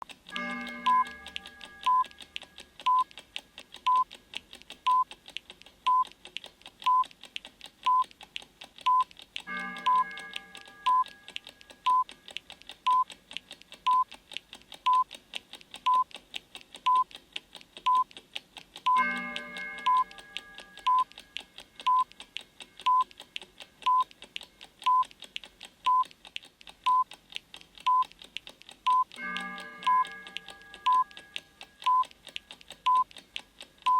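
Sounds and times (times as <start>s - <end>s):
fast clock-like ticking: 0.0s - 33.9s
bell-like chime: 0.4s - 1.9s, 9.5s - 10.9s, 29.2s - 30.8s
short electronic beep: 9.8s - 10.1s.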